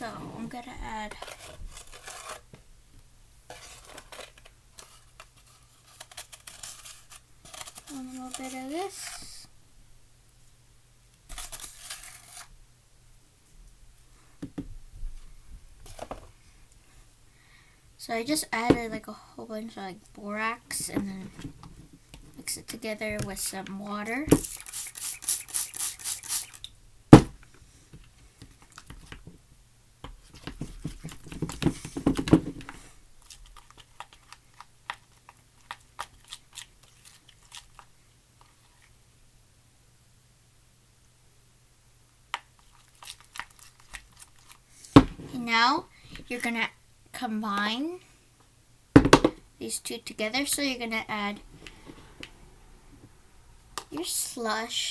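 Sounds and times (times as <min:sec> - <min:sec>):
powder shaken from container: 0:24.4 - 0:26.6.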